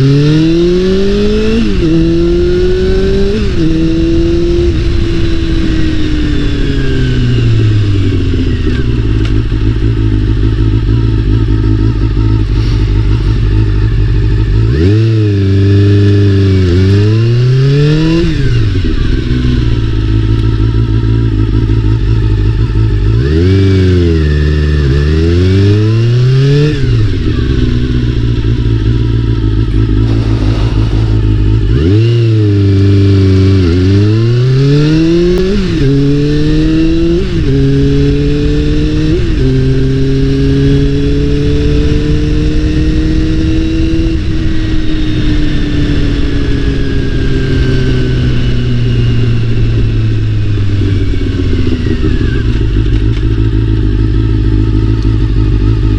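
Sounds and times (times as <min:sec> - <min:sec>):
motorcycle engine revving: 0:00.0 - 0:55.9.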